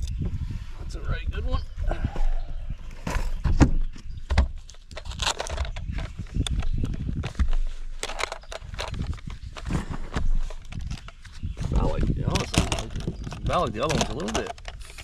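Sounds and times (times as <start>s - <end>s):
handling clicks and knocks: 4.0s - 15.0s.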